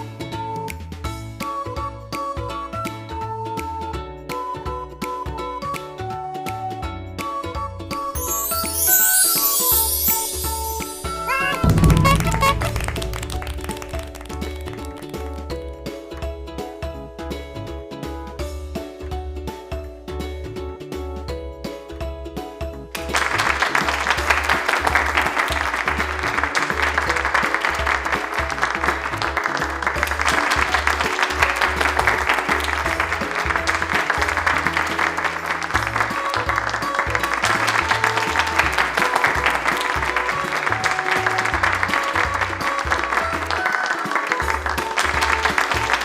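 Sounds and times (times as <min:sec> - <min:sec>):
crowd applause: 0:08.2 - 0:15.6, 0:23.0 - 0:46.0
music with pulsing bass beat: 0:11.1 - 0:15.5.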